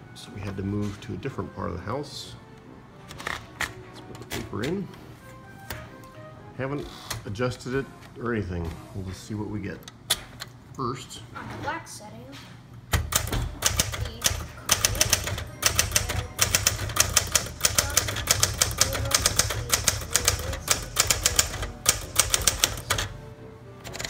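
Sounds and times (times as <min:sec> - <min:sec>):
manual typewriter typing: 0:12.9 - 0:23.2.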